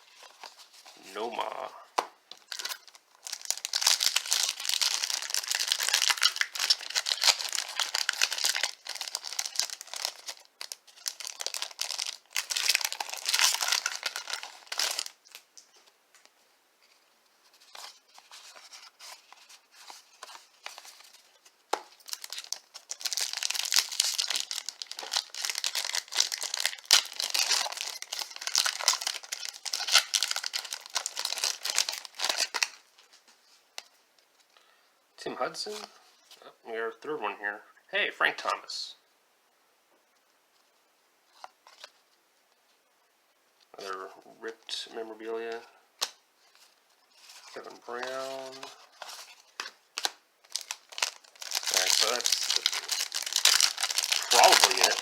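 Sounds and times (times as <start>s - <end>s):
card wrappers crinkling and tearing: 2.3s - 15.7s, 17.5s - 33.1s, 44.7s - 55.0s.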